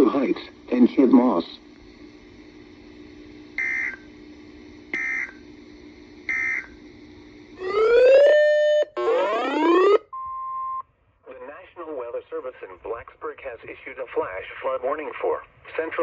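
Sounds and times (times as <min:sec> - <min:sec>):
faint steady radio hum: 0:00.0 - 0:07.0, 0:11.2 - 0:16.0
data tone bursts: 0:07.6 - 0:10.0
rising siren-like tone: 0:07.6 - 0:10.1.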